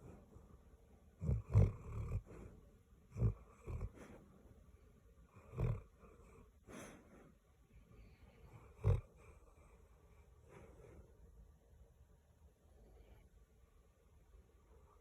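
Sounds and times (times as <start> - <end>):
dog snoring: 1.2 - 4.2, 5.3 - 7.2, 8.4 - 9.8.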